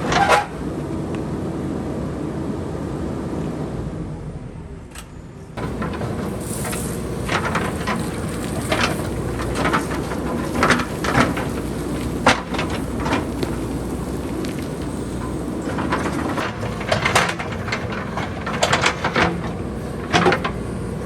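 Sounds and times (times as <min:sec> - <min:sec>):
diesel engine running: 0:00.0 - 0:21.0
rocks clattering down hillside: 0:05.6 - 0:20.9.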